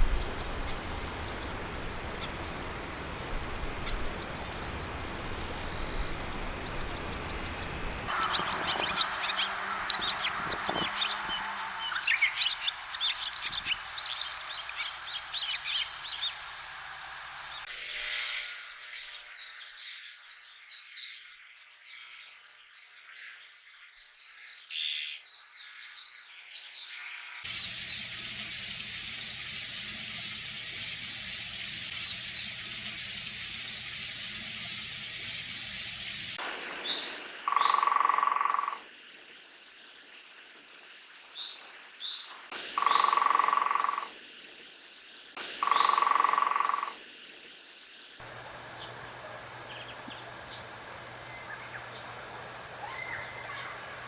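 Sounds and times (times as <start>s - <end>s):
faint bird calls: 0.0s - 16.6s, 24.7s - 25.3s, 36.7s - 38.9s, 41.3s - 44.2s, 45.6s - 47.0s, 52.8s - 54.0s
woodpecker high calls: 0.0s - 17.6s, 24.7s - 25.3s, 36.7s - 38.9s, 42.2s - 44.2s, 45.6s - 47.0s, 52.8s - 54.0s
background hiss: 0.0s - 21.2s, 27.4s - 54.0s.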